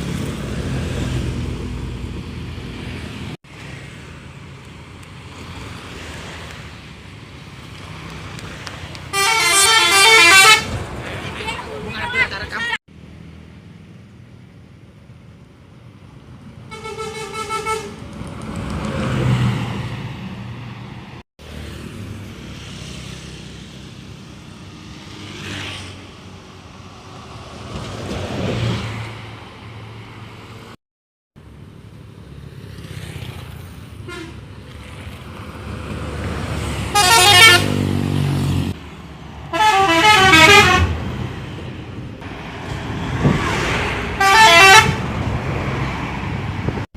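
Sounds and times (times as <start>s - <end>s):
bus engines passing: 0.0s - 30.8s, 31.4s - 46.9s
warbling multi-tone bus horns: 9.1s - 10.8s, 16.7s - 18.0s, 34.0s - 34.4s, 36.9s - 37.8s, 39.5s - 41.1s, 43.3s - 45.1s.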